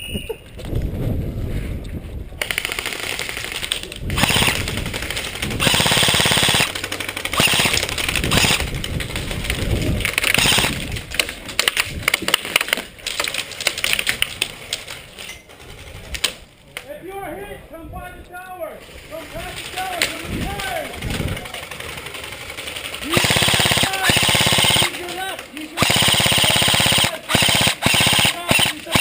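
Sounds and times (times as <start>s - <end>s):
airsoft guns firing bursts: 2.4s - 11.2s, 19.2s - 29.0s.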